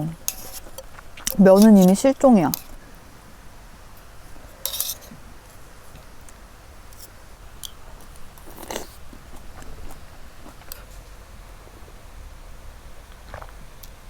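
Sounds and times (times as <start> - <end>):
utensils clinking against a bowl: 0.2 - 2.8, 4.6 - 5.1.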